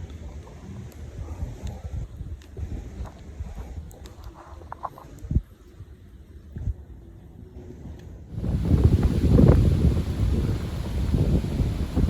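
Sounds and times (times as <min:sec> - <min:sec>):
wind on microphone: 0:00.0 - 0:07.0, 0:07.6 - 0:12.0
dull low thumps: 0:08.4 - 0:12.0.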